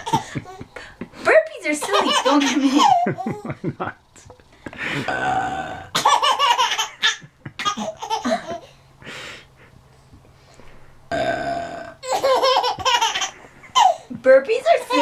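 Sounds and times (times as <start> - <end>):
baby laughing: 0.0 - 0.8, 1.8 - 3.6, 5.9 - 8.7, 12.0 - 14.1
drawn-out burp: 4.9 - 6.0, 11.1 - 12.0.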